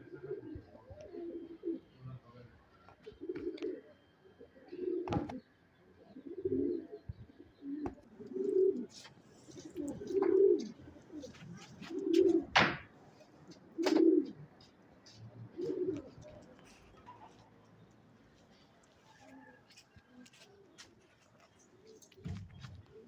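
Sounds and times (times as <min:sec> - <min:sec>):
pigeons cooing: 0:00.0 - 0:02.2, 0:02.8 - 0:17.5.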